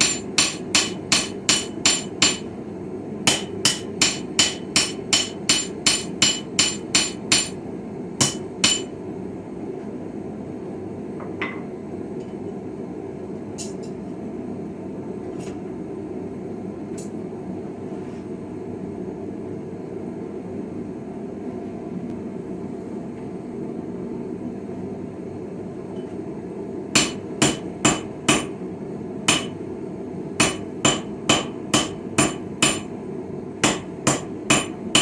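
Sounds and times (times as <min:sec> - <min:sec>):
hammer striking iron anvil: 0:00.0 - 0:02.5, 0:03.3 - 0:07.6, 0:08.2 - 0:09.0, 0:27.0 - 0:28.6, 0:29.3 - 0:29.6, 0:30.4 - 0:32.9, 0:33.6 - 0:35.0.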